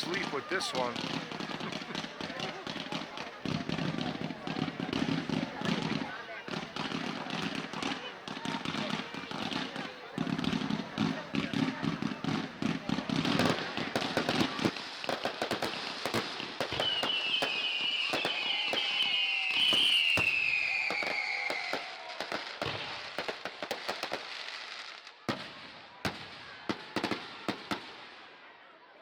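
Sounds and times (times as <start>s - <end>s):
fireworks crackling pops: 0.0s - 28.3s
firework whistle falling in pitch: 16.8s - 22.0s.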